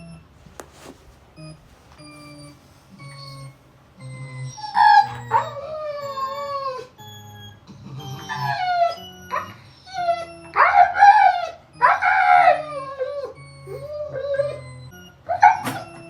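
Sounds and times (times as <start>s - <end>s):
dog howling and whining: 4.1s - 7.1s, 7.7s - 16.0s.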